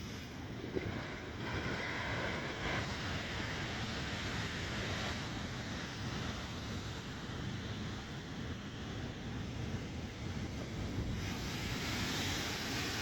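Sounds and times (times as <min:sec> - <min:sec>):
ocean surf breaking: 0:00.0 - 0:07.0, 0:10.4 - 0:13.0
wind buffeting microphone: 0:00.3 - 0:13.0.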